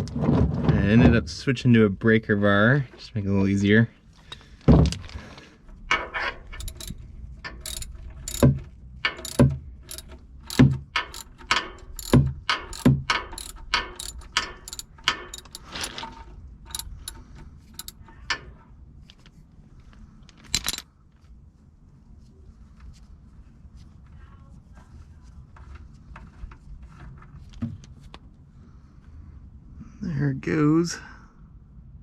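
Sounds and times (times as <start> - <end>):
socket wrench clicks and knocks: 6.6 - 16.0, 16.7 - 18.1, 20.5 - 20.8.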